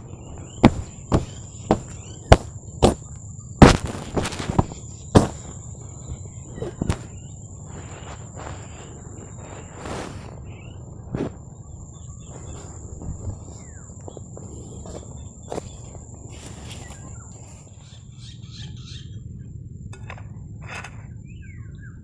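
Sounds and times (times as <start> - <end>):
wind rumble on microphone: 0.0 - 22.0
short knocks and rustles: 0.6 - 5.6.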